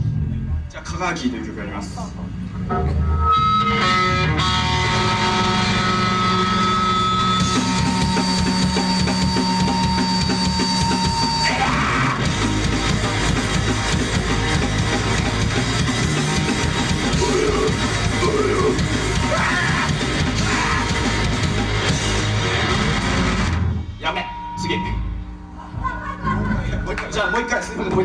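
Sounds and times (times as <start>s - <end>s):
guitar feedback tone: 2.3s - 25.6s
heavy metal band playing: 2.7s - 25.2s.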